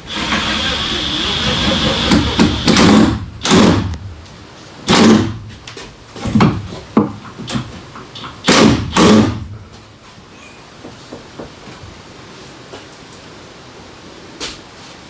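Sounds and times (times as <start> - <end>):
loud bangs and knocks: 1.0 - 3.9, 4.9 - 5.5, 8.3 - 9.5.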